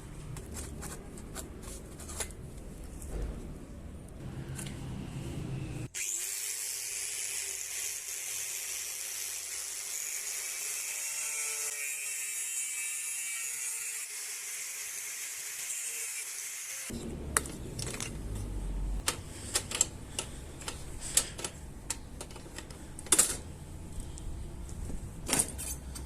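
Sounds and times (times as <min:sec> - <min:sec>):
power tool grinding: 0:06.0 - 0:18.5.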